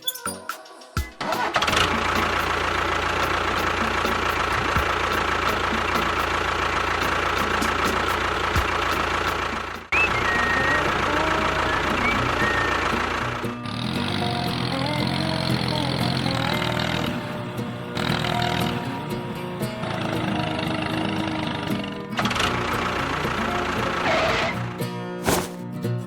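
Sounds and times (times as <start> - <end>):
small motor whining: 9.9 - 17.4, 19.8 - 24.6.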